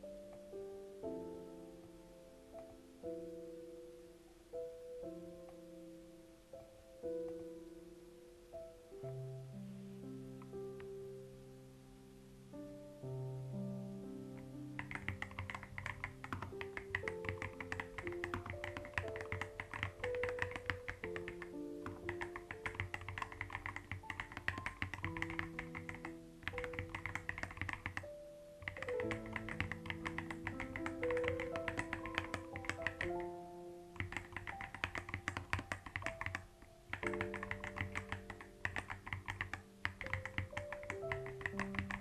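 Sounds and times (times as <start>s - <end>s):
soft slow background music: 0.0s - 42.0s
keyboard typing clicks: 14.4s - 33.3s, 34.0s - 42.0s.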